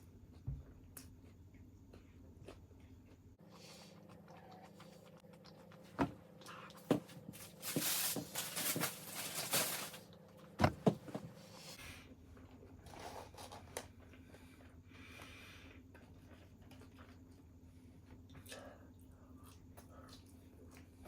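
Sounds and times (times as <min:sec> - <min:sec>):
crinkly rustling: 0:07.3 - 0:10.1.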